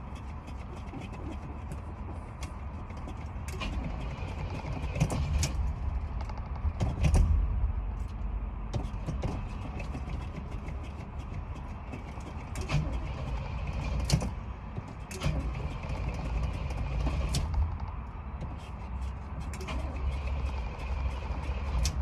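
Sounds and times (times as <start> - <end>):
car engine rumbling: 0.0 - 22.0.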